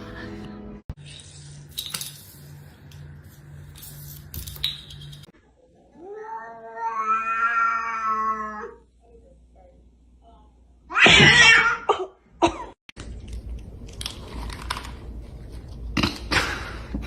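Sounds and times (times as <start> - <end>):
cat yowling: 6.0 - 8.8.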